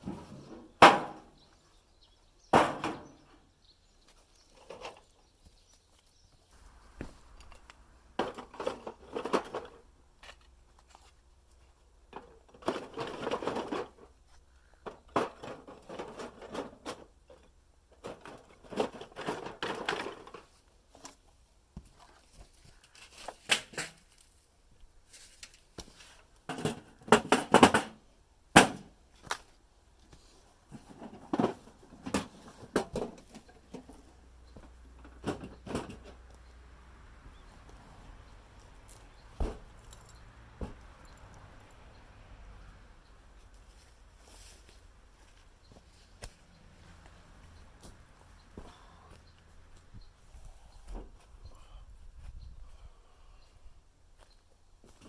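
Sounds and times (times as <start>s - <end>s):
crunching and rustling with cracks: 17.9s - 26.5s.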